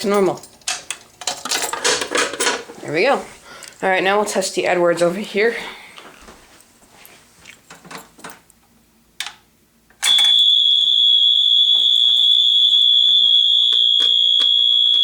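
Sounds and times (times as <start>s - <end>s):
high-pitched alarm buzzer tone: 10.0s - 15.0s.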